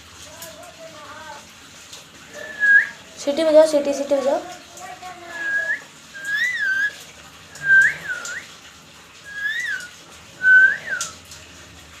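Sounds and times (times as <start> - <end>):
parrot whistling: 2.4 - 3.0, 5.4 - 7.0, 7.6 - 8.5, 9.3 - 11.1.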